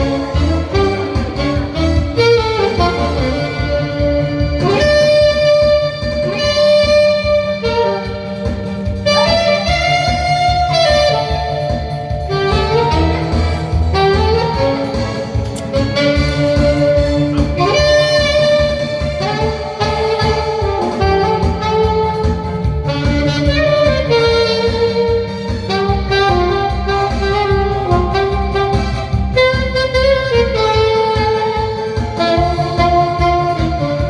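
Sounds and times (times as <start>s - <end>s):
accompaniment with steady beat: 0.0s - 34.0s
saxophone melody with vibrato: 0.0s - 34.0s.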